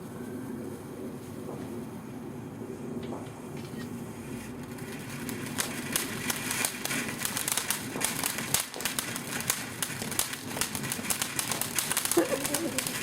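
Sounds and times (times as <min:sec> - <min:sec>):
small firework crackling: 0:00.0 - 0:13.0.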